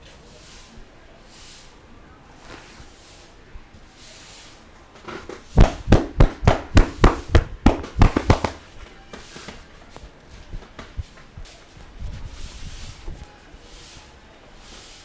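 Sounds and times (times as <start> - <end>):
hands slapping body: 5.2 - 9.6.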